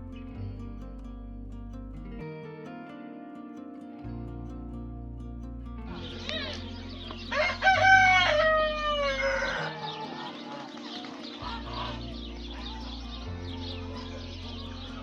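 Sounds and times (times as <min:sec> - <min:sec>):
rooster crowing: 0:07.3 - 0:14.3.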